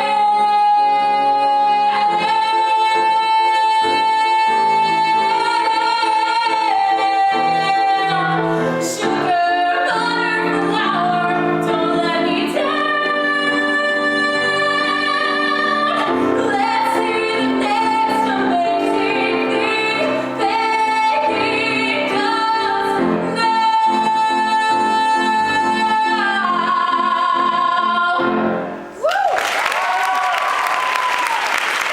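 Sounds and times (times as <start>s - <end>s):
woman singing a ballad: 0.0s - 28.4s
applause: 29.0s - 31.9s.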